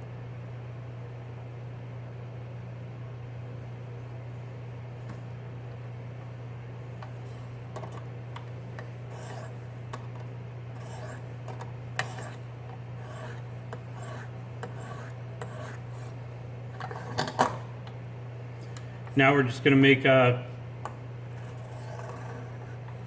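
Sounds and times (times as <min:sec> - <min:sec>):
steady low hum: 0:00.0 - 0:23.0
sharpening stone scraping knife blade: 0:10.8 - 0:11.3, 0:12.0 - 0:12.4, 0:13.0 - 0:16.1.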